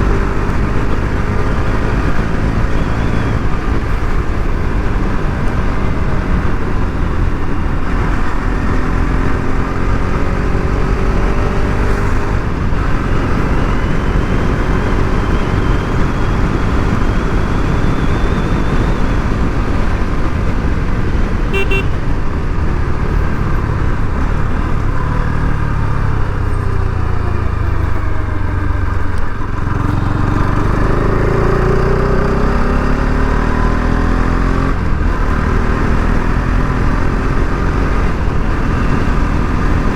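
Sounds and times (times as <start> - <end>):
motorcycle engine running: 0.0 - 39.9
wind and road noise: 0.0 - 39.9
horn beep: 21.5 - 22.1.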